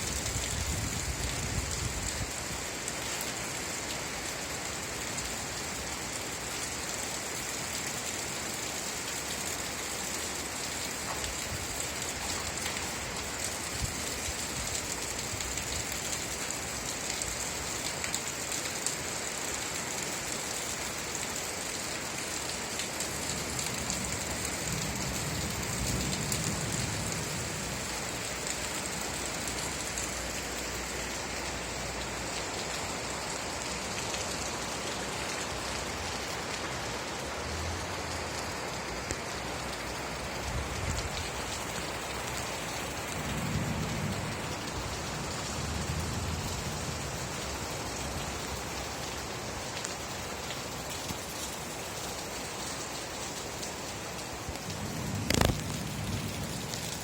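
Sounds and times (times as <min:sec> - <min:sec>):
steady rain hiss: 0:00.0 - 0:57.0
raindrop ticks: 0:10.6 - 0:19.0, 0:38.1 - 0:48.8, 0:49.7 - 0:57.0.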